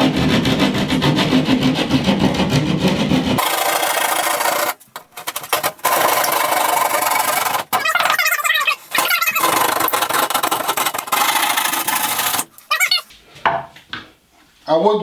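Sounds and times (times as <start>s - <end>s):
hand saw rasping through drywall: 0.0s - 7.9s, 8.9s - 13.0s.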